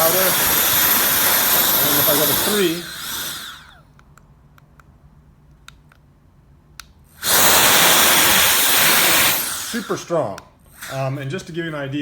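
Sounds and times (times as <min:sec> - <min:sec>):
loud rush of air: 0:07.2 - 0:10.2.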